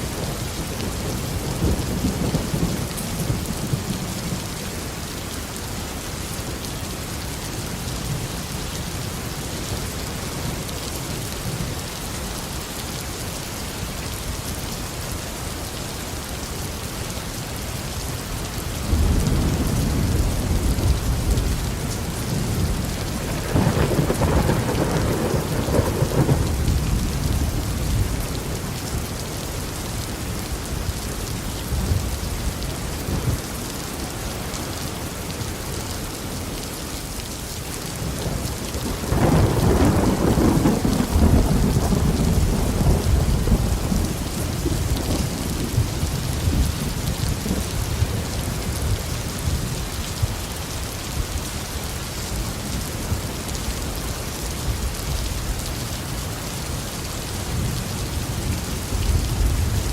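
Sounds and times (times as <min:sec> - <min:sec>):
rain falling: 0:00.0 - 0:59.9
thunder rumbling: 0:18.9 - 0:28.6, 0:38.0 - 0:49.5.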